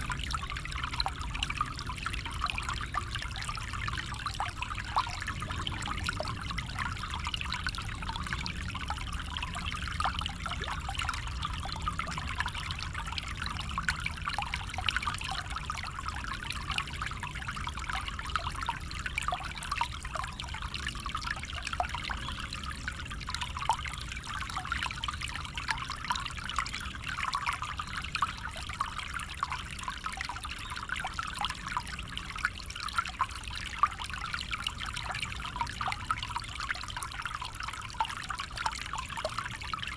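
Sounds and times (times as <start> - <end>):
stream trickling over stones: 0.0 - 39.9.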